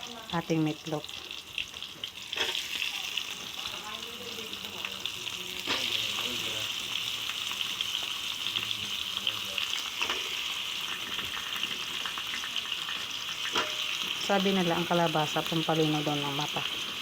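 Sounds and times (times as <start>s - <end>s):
vegetables sizzling in oil: 0.0s - 17.0s
spatula scraping a pan: 13.4s - 14.2s.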